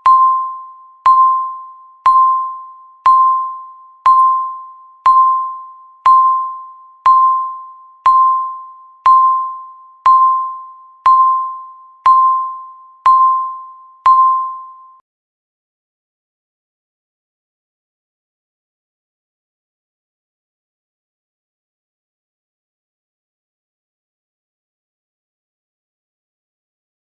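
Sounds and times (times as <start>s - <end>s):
countdown timer beeping: 0.0s - 15.0s.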